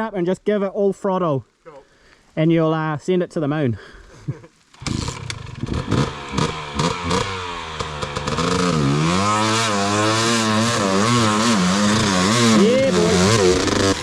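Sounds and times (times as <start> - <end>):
dirt bike engine revving: 4.8 - 14.0.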